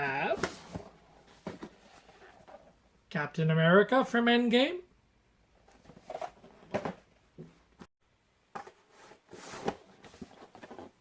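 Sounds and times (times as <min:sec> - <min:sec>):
cardboard packaging rustling: 0:08.6 - 0:11.0.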